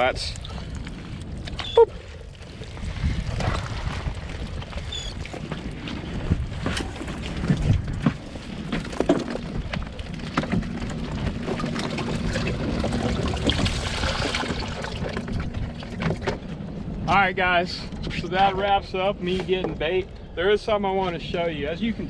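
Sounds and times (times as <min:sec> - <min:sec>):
knocks and clatters on a boat: 0:02.8 - 0:17.2, 0:17.8 - 0:20.2.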